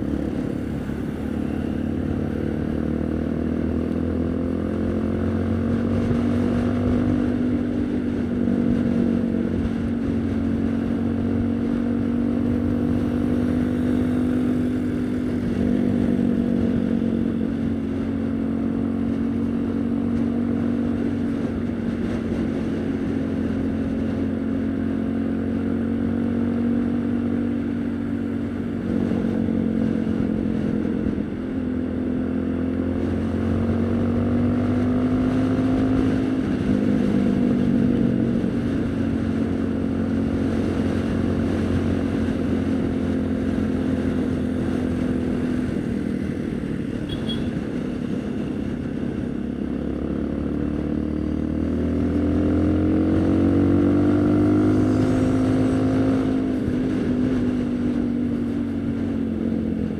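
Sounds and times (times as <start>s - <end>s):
motorcycle engine running: 0.0s - 59.9s.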